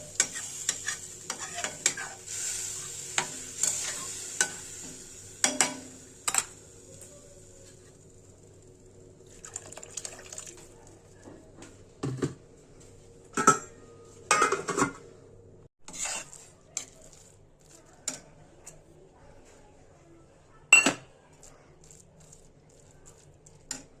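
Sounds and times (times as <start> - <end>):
faint sizzle: 0.0 - 12.0, 15.8 - 24.0
utensils knocking against a pan: 5.4 - 6.5.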